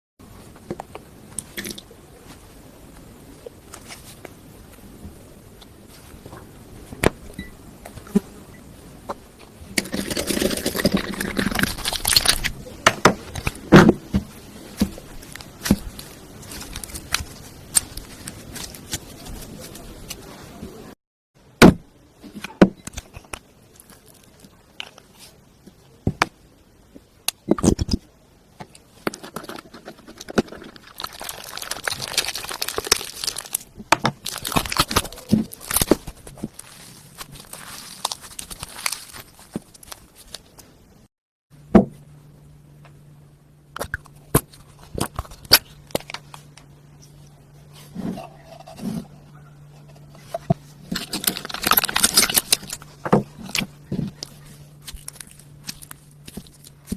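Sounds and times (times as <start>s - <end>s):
rustling and scraping: 3.6s - 5.2s, 10.4s - 20.8s, 28.8s - 40.8s, 44.0s - 56.9s.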